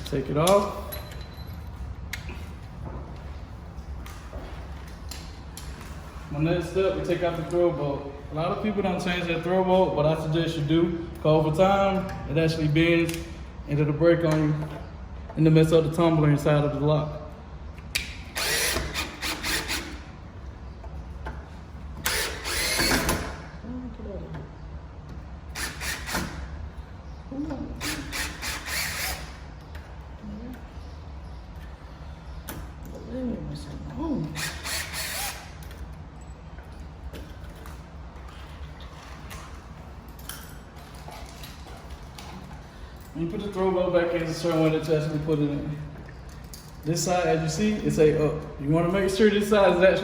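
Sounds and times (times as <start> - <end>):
cordless drill whine: 18.3 - 20.0, 22.0 - 23.4, 25.6 - 26.4, 27.8 - 29.4, 34.4 - 35.6.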